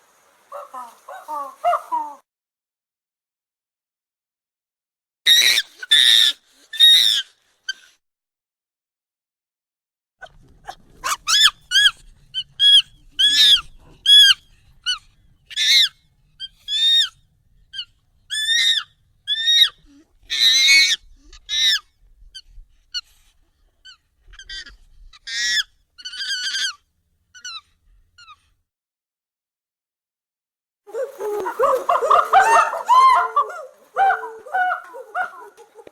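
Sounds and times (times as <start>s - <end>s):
high-pitched monkey cries: 0.5s - 2.2s, 5.3s - 7.9s, 11.0s - 21.9s, 23.8s - 26.8s, 27.4s - 27.6s, 30.9s - 35.9s
harsh monkey screech: 5.3s - 7.9s, 10.6s - 21.9s, 23.8s - 26.8s, 27.4s - 28.4s, 30.9s - 35.9s.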